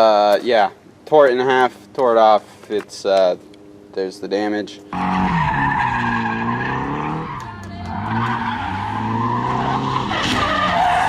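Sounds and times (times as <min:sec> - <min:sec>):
car engine revving: 0:04.9 - 0:11.0
tires squealing: 0:04.9 - 0:11.0.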